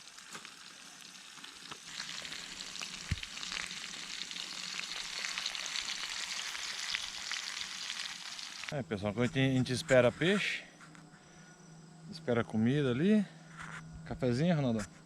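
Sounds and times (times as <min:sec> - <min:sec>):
sausage sizzling in a pan: 0:00.0 - 0:08.8.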